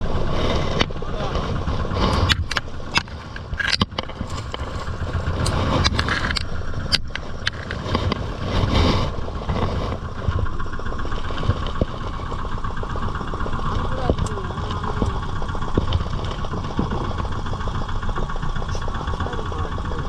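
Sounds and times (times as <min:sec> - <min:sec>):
engine idling: 0:00.0 - 0:20.0
sharp clicks: 0:05.3 - 0:08.3.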